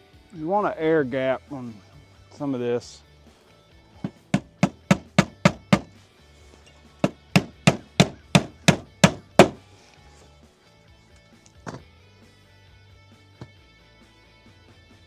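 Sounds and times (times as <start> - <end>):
hammer striking nail: 4.0 - 6.0, 7.0 - 9.6.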